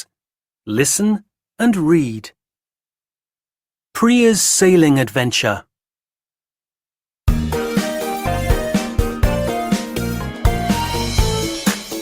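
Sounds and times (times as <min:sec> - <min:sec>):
upbeat instrumental music: 0:07.3 - 0:12.0.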